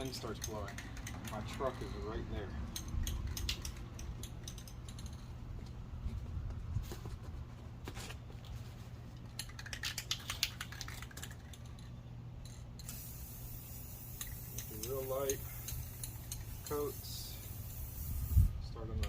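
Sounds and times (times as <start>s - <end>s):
spray paint can rattling: 0.0s - 1.8s, 3.0s - 5.3s, 9.2s - 18.5s
wind rumble on microphone: 5.4s - 7.5s, 18.1s - 19.0s.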